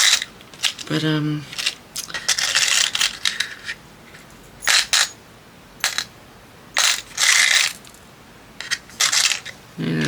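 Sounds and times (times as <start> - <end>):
small metal pieces clinking: 0.0 - 3.8, 4.6 - 5.2, 5.8 - 6.1, 6.8 - 8.0, 8.6 - 9.5.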